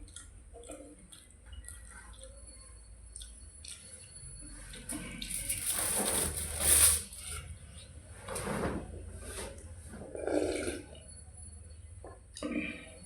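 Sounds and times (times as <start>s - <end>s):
chewing and slurping: 0.0s - 5.6s, 9.9s - 11.2s.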